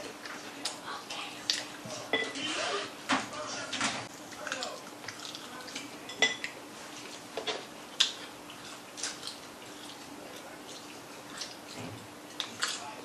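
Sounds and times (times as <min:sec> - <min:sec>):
faint steady hum: 0:00.0 - 0:13.0
crunchy chewing: 0:04.1 - 0:13.0.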